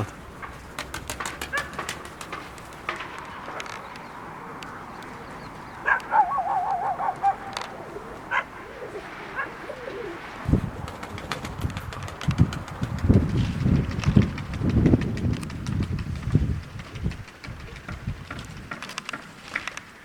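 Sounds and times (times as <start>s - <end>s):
pigeons cooing: 0.0s - 15.2s.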